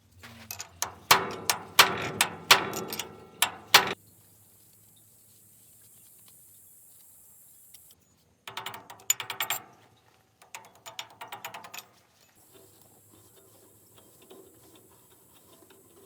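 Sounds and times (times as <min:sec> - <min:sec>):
ratchet wrench clicking: 0:00.5 - 0:04.0, 0:08.5 - 0:09.7, 0:10.4 - 0:11.8.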